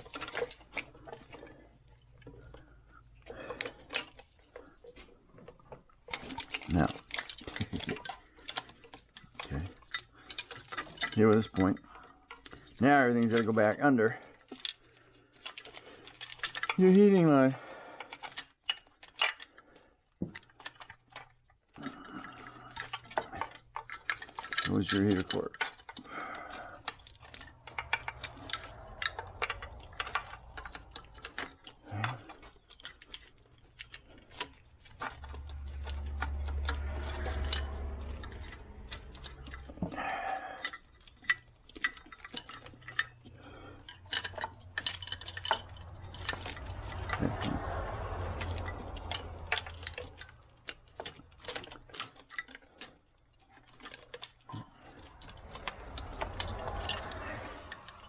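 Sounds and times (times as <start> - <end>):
metal tools clinking: 0.0 - 19.5, 20.4 - 58.0
low rumble: 26.4 - 32.5, 33.9 - 40.4, 42.6 - 51.4, 54.6 - 58.0.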